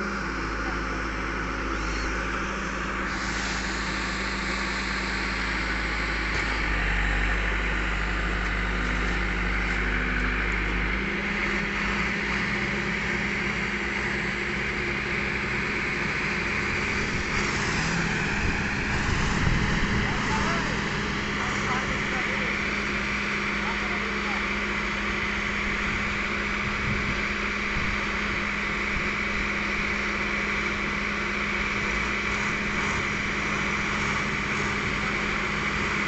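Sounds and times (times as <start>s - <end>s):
diesel engine running: 0.0s - 36.0s.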